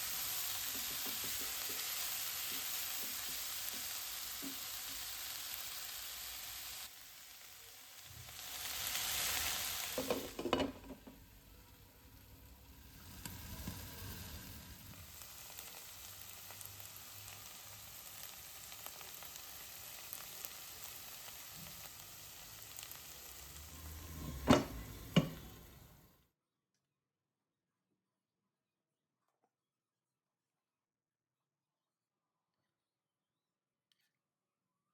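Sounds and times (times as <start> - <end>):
food sizzling in a frying pan: 0.0 - 26.1.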